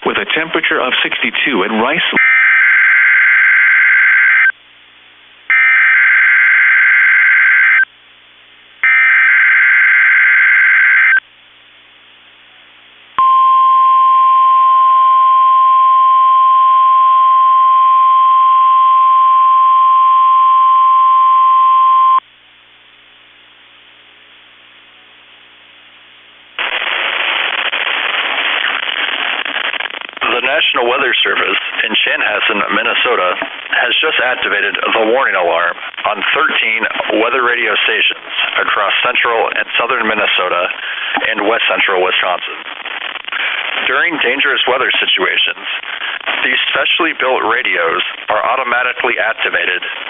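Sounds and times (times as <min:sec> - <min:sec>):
steady alarm tone: 0:08.8 - 0:11.2
static hiss: 0:25.9 - 0:50.0
buzzy digital data bursts: 0:26.6 - 0:30.0.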